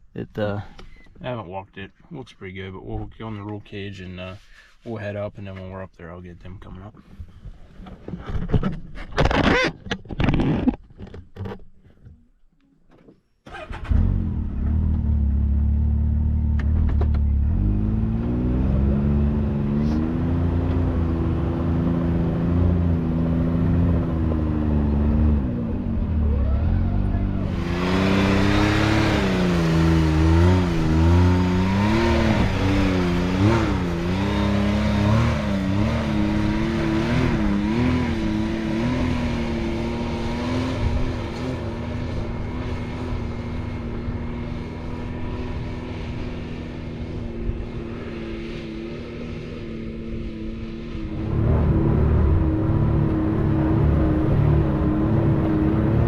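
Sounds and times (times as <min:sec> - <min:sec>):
off-road vehicle engine under load: 0:13.4 - 0:56.0.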